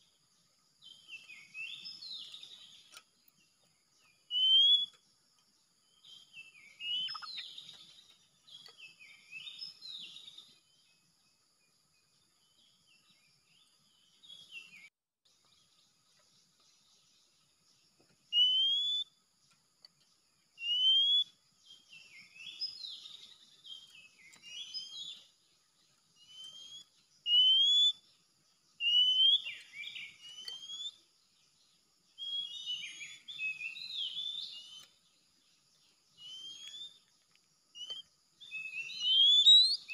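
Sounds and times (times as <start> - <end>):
bird singing whistles and chatter: 4.2 - 5.0, 6.1 - 7.8, 18.3 - 19.1, 20.6 - 25.3, 26.2 - 28.0, 28.8 - 31.0, 32.2 - 35.0, 36.2 - 37.0, 37.8 - 39.9.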